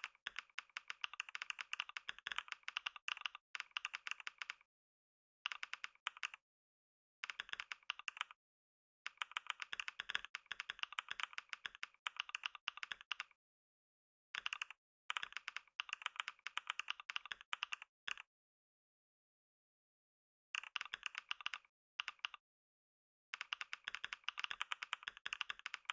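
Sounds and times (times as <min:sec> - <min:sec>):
fast typing on keyboard: 0:00.0 - 0:04.7, 0:05.5 - 0:06.4, 0:07.2 - 0:08.4, 0:09.1 - 0:13.4, 0:14.4 - 0:18.3, 0:20.6 - 0:22.4, 0:23.4 - 0:25.9.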